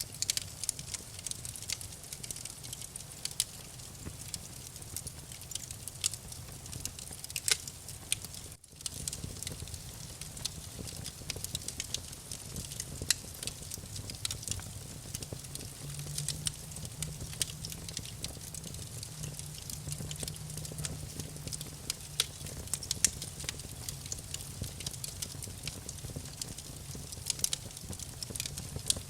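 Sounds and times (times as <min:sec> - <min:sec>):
campfire crackling and popping: 0:00.0 - 0:29.0
low steady rumble: 0:09.0 - 0:28.8.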